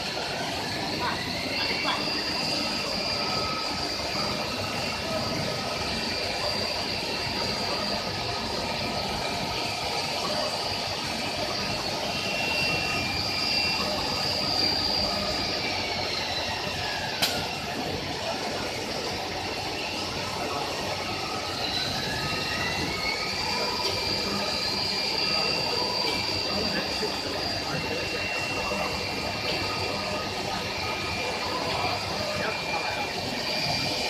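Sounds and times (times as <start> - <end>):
machine noise: 0.0 - 34.0
spindle high whine: 0.0 - 34.0
sharp click: 17.2 - 17.5.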